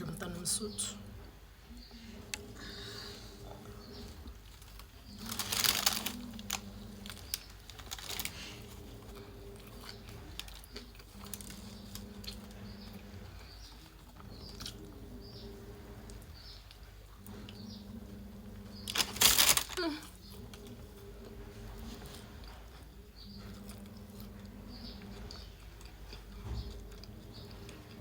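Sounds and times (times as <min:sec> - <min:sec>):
chewing with smacks: 0:01.7 - 0:28.0.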